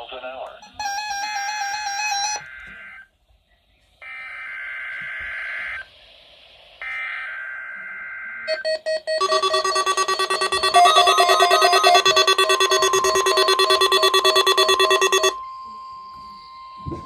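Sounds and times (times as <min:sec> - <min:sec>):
pulsing electronic warning alarm: 0:00.6 - 0:03.0, 0:06.9 - 0:17.0
buzzy digital data bursts: 0:09.2 - 0:15.4.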